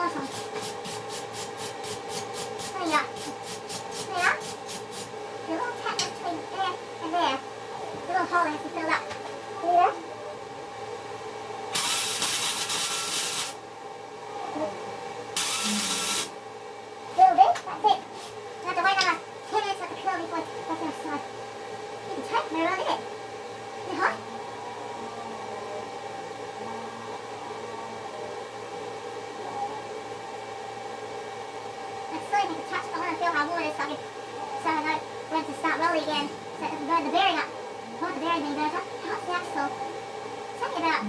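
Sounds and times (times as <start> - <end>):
machine hum and hiss: 0.0 - 8.3, 9.1 - 22.1
welding arc crackling: 11.8 - 13.6, 15.4 - 16.4.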